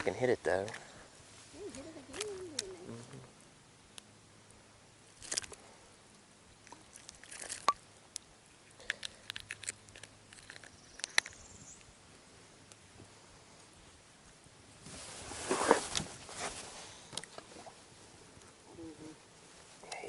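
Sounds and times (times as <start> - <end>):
light clicks and crunching handling: 0.0 - 0.9, 5.2 - 5.6, 6.6 - 11.9.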